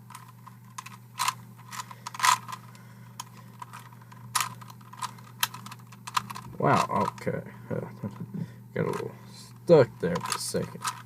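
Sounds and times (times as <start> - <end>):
puzzle cube clicking: 0.1 - 2.6, 3.2 - 7.2, 10.1 - 11.0.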